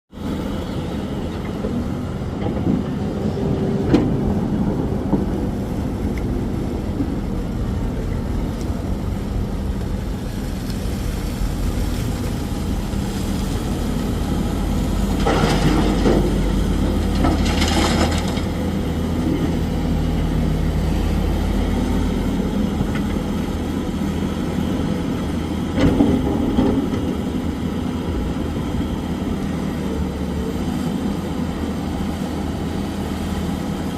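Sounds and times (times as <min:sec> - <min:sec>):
diesel engine running: 0:00.2 - 0:33.9
coal rattling clatter: 0:15.2 - 0:18.6.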